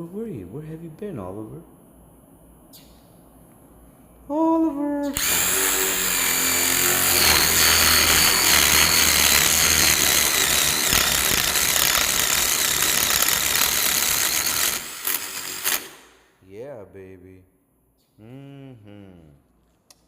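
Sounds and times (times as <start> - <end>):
power drill boring through wood: 5.2 - 16.1.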